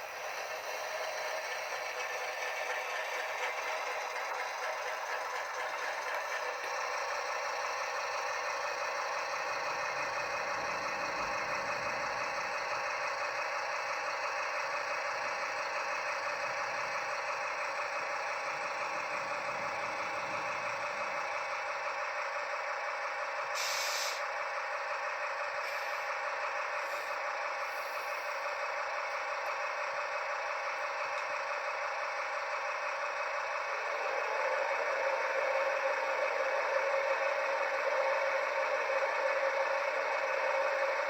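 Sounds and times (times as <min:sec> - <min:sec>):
model diesel engine sound: 0:00.0 - 0:41.0
air release hiss: 0:23.6 - 0:24.2.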